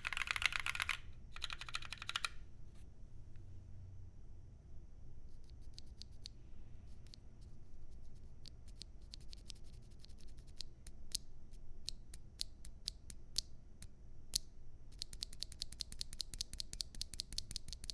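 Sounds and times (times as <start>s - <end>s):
mechanical keyboard typing: 0.0s - 2.4s.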